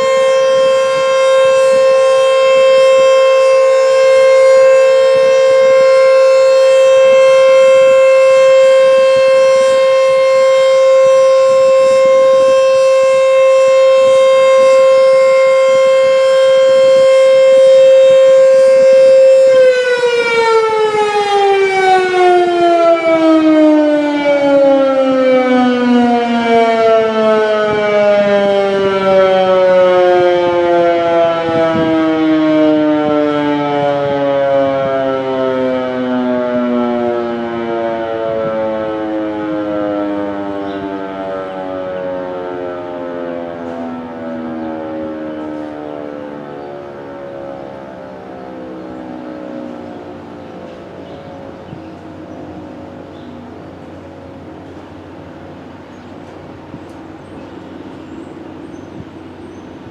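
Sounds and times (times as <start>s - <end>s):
warning siren steady tone: 0.0s - 59.9s.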